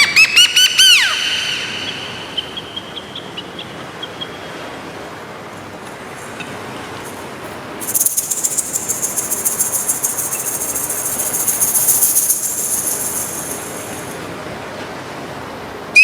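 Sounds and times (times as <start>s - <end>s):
rattle shaking: 7.0s - 14.3s.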